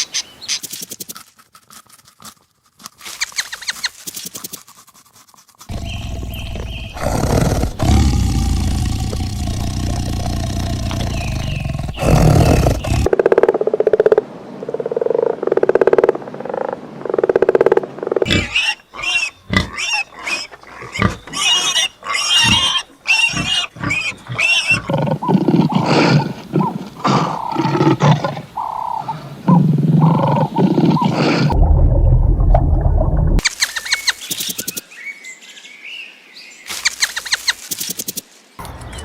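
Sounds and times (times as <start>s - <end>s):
low pulsing animal calls: 5.7s - 13.1s.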